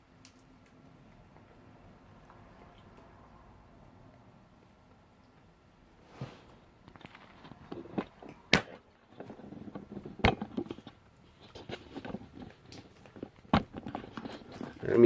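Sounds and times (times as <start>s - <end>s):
rustling: 6.0s - 8.4s, 9.0s - 15.0s.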